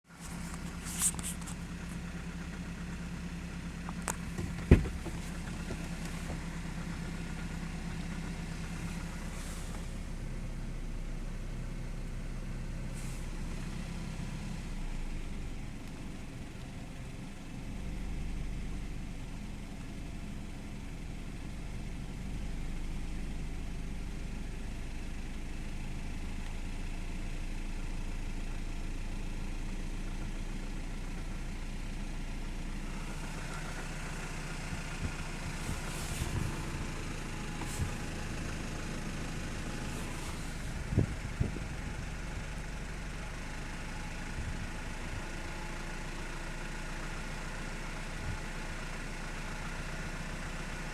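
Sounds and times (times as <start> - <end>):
petrol engine running at low revs: 0.0 - 50.9
short sharp engine knocks: 3.9 - 6.6.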